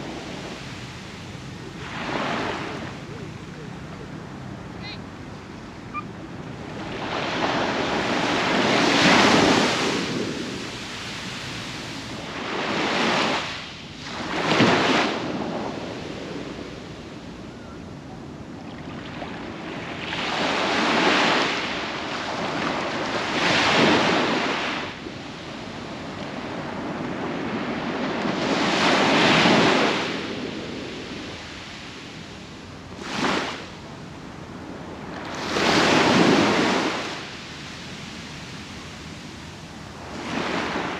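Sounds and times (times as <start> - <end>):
sea waves breaking on beach: 0.0 - 17.4, 18.6 - 40.9.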